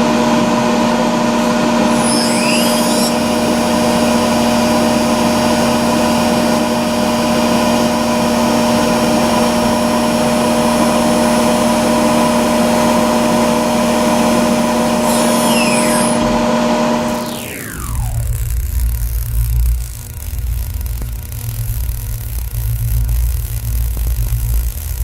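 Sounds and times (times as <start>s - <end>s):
electric motor humming: 1.8s - 25.0s
high swooping sounds: 15.1s - 19.0s.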